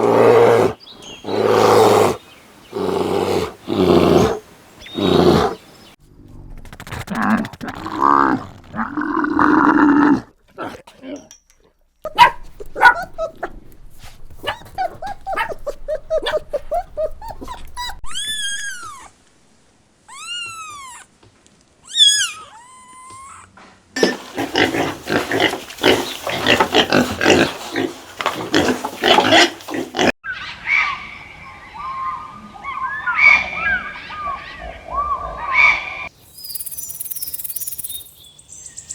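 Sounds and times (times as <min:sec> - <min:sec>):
pigs grunting: 0:00.0 - 0:05.6, 0:24.0 - 0:30.2
pigs squealing: 0:00.0 - 0:05.6, 0:21.9 - 0:30.9.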